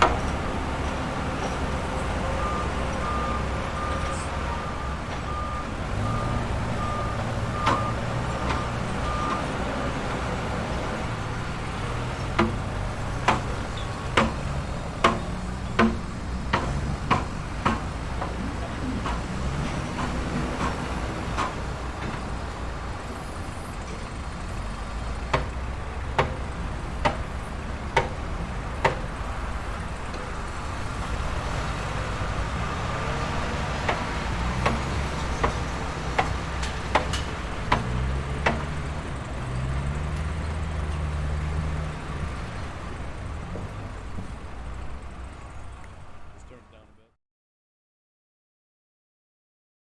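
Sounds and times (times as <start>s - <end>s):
heavy engine running: 0.0s - 46.9s
sharp knocks: 14.1s - 19.2s, 34.6s - 38.8s.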